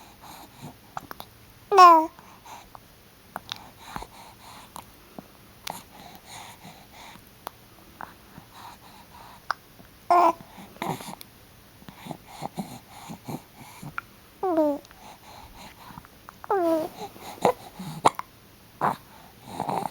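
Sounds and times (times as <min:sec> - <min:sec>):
baby grunts and breaths: 0:01.7 - 0:02.2, 0:10.1 - 0:11.2, 0:11.9 - 0:19.9
baby hiccuping: 0:16.5 - 0:19.0.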